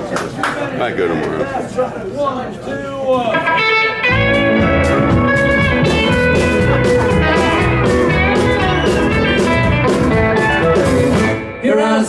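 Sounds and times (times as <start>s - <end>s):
country band instrumental: 3.2s - 12.0s
electric guitar: 3.4s - 12.0s.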